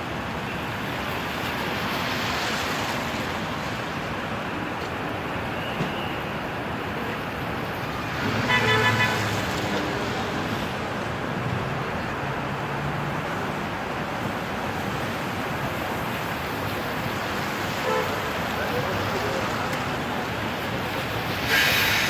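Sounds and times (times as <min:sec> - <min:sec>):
city street traffic: 0:00.0 - 0:22.0
car horn honking: 0:08.4 - 0:09.3, 0:17.8 - 0:18.2.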